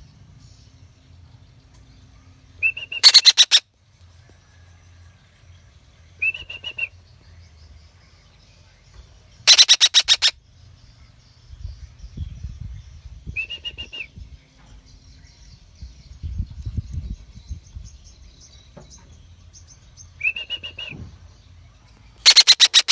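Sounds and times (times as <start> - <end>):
parakeet squawking: 3.0 - 3.6, 9.5 - 10.3, 22.2 - 22.9.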